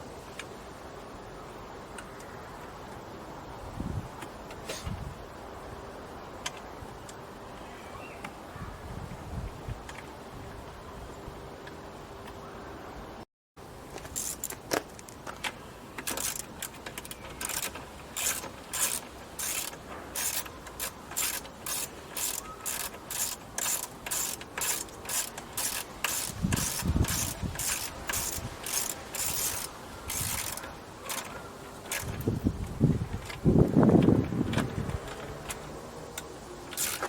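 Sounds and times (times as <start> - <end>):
socket ratchet clicking: 14.0 - 15.1, 16.0 - 32.4, 34.9 - 37.0.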